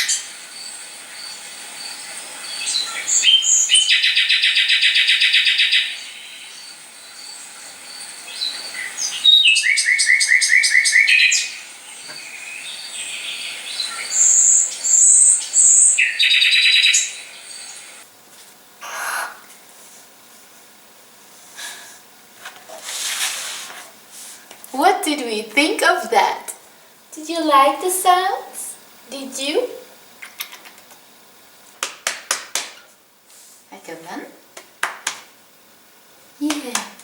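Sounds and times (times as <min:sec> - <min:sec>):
recorded songbird trills: 0:00.0 - 0:18.0.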